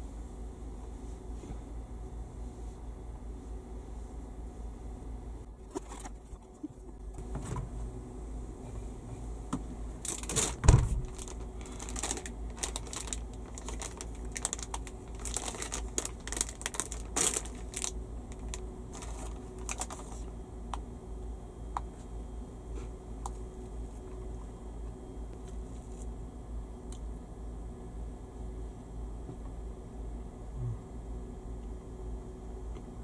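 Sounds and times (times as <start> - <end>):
low steady hum: 0.0 - 33.0
loud thump: 10.6 - 11.2.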